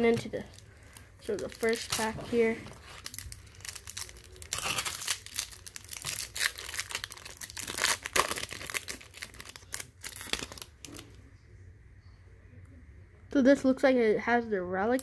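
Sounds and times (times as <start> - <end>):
foil pack tearing and crinkling: 1.3 - 11.0.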